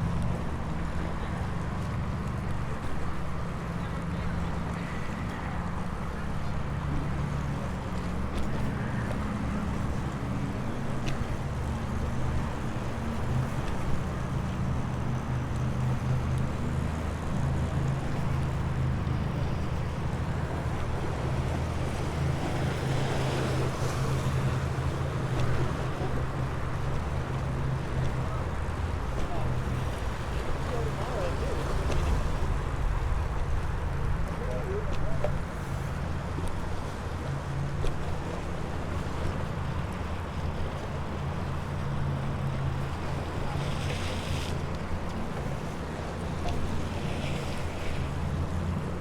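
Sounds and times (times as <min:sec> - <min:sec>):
road traffic rumble: 0:00.0 - 0:49.0.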